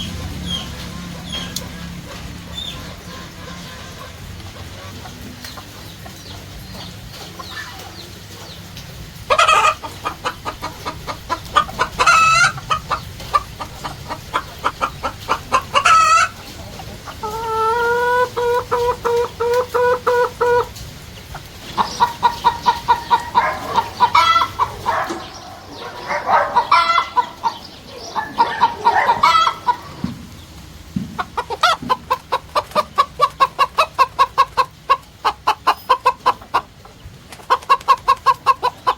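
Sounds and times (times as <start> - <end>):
chickens clucking: 0.0 - 38.9
rooster crowing: 23.0 - 30.0.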